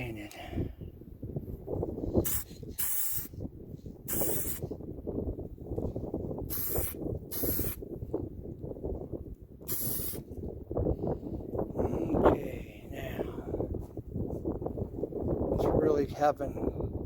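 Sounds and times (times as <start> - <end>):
spray paint hissing: 2.2 - 3.4, 4.0 - 4.7, 6.5 - 7.8, 9.6 - 10.3.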